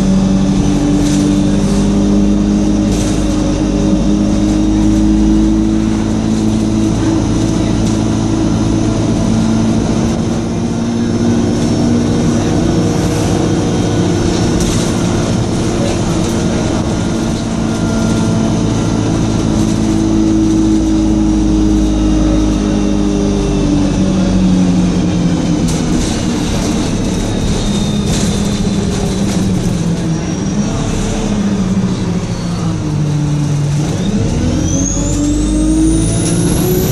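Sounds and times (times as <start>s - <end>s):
bus diesel engine running: 0.0s - 36.9s
rattles and clicks: 14.2s - 18.5s, 25.6s - 30.1s
turbocharger whine: 34.0s - 36.9s.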